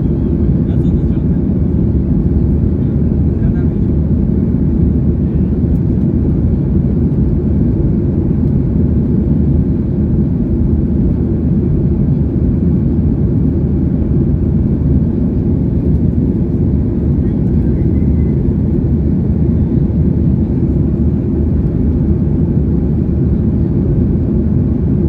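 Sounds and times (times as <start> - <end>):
jet engines rumbling in cabin: 0.0 - 25.0.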